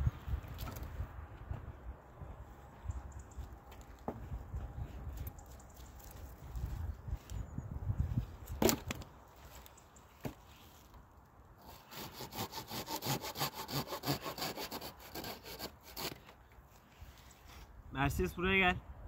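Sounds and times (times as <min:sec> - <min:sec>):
wood cracking: 0:08.5 - 0:10.4
rasping strokes on wood: 0:11.6 - 0:16.3.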